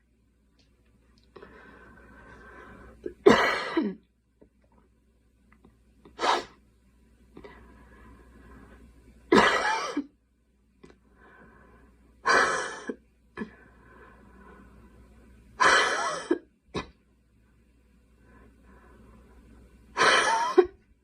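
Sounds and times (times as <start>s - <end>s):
girl coughing: 3.2s - 4.0s, 9.3s - 10.1s, 15.6s - 17.0s, 20.0s - 20.8s.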